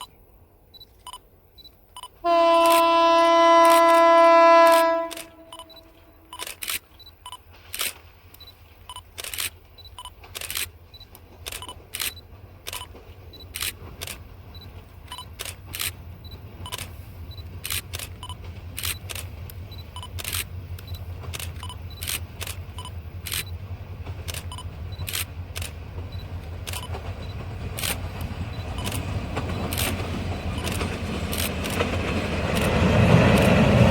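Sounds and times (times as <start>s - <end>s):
locomotive engine rumble: 0.0s - 33.9s
camera shutters clicking: 2.0s - 12.9s, 13.5s - 14.2s, 15.1s - 16.0s, 16.6s - 17.0s, 17.6s - 23.5s, 24.2s - 25.8s, 26.4s - 27.1s, 27.8s - 29.0s, 29.6s - 30.0s, 30.6s - 31.9s, 32.6s - 33.5s
locomotive horn: 2.2s - 6.3s.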